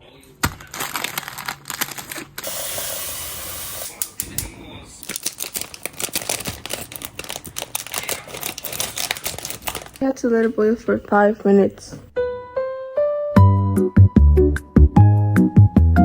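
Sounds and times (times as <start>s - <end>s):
steady hiss: 2.4s - 4.3s
clicks and crackles: 4.0s - 10.0s.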